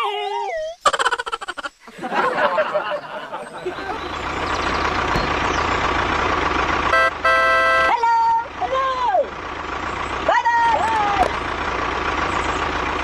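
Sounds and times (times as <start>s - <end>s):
vehicle engine rumbling: 2.6s - 13.0s
horn honking: 4.3s - 9.0s.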